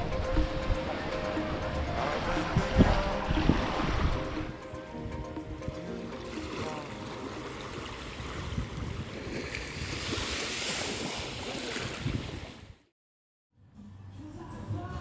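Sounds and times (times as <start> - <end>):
wind on microphone: 0.0 - 5.9, 8.0 - 12.8
sea surf washing in: 0.0 - 12.8.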